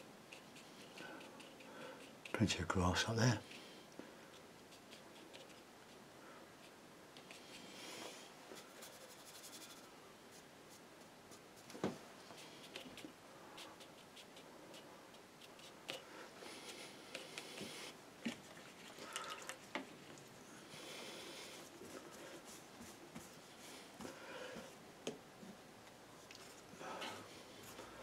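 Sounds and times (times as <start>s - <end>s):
paintbrush scratching on paper: 0.3s - 3.6s, 4.3s - 6.0s, 8.6s - 11.7s, 12.3s - 17.8s.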